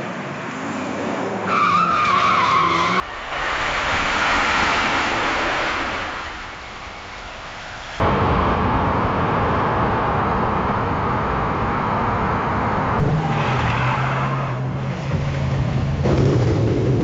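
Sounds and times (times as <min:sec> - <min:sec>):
car road and engine noise: 0:00.0 - 0:17.0
low engine hum: 0:08.0 - 0:17.0.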